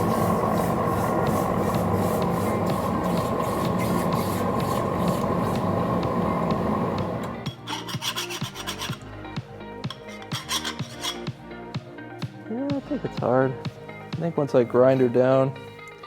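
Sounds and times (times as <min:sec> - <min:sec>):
loud steady rushing noise: 0:00.0 - 0:07.4
file rasping on steel: 0:07.4 - 0:09.1, 0:09.9 - 0:11.3.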